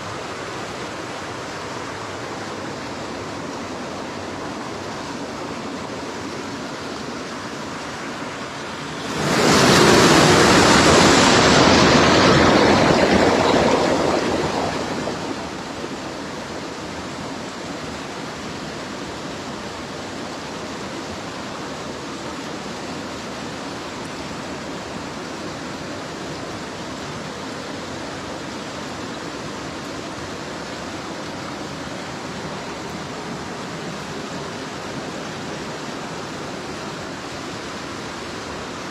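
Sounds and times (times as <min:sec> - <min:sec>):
stream water flowing: 0:00.0 - 0:38.9
loud rushing noise: 0:04.2 - 0:16.6.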